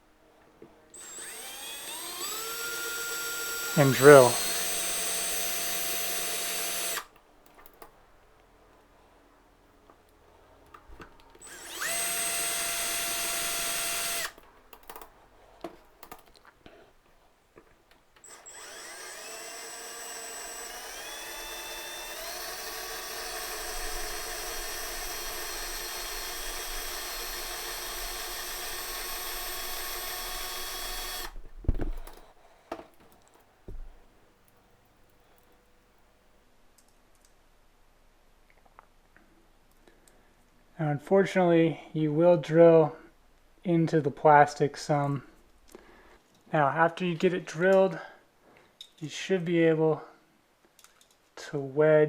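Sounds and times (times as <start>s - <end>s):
power drill whining: 0.9s - 7.1s, 10.9s - 15.0s, 18.2s - 34.0s.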